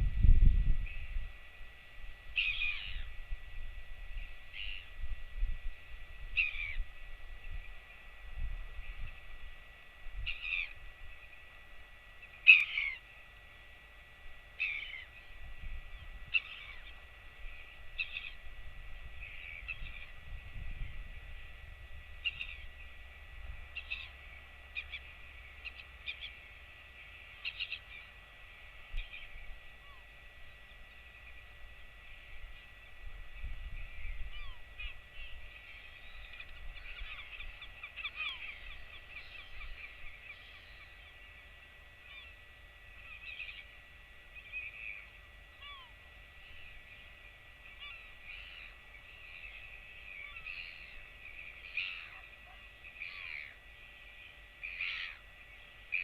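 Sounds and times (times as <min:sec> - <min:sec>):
wind rumble on microphone: 0:00.0 - 0:11.2, 0:17.4 - 0:23.7, 0:32.3 - 0:35.6
faint steady high whine: 0:00.0 - 0:56.0
short bird calls: 0:02.4 - 0:03.2, 0:04.5 - 0:05.0, 0:06.4 - 0:06.8, 0:10.2 - 0:10.8, 0:12.4 - 0:13.0, 0:14.6 - 0:18.4, 0:22.2 - 0:22.9, 0:23.7 - 0:26.6, 0:27.3 - 0:28.2, 0:33.8 - 0:56.0.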